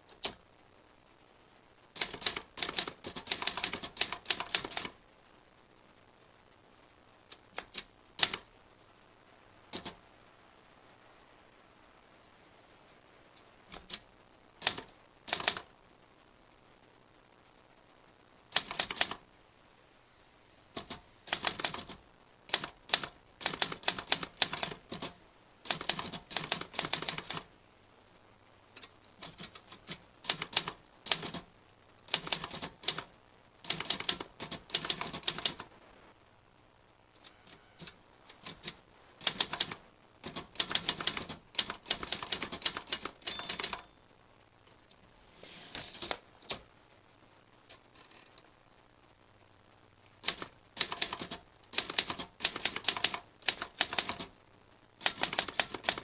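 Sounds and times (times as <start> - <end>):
typewriter key strikes: 14.6 - 15.7, 18.6 - 19.2, 20.8 - 25.1, 25.7 - 27.5, 29.2 - 31.4, 32.1 - 33.0, 33.7 - 35.7, 37.8 - 43.9, 50.2 - 54.4, 55.0 - 56.0.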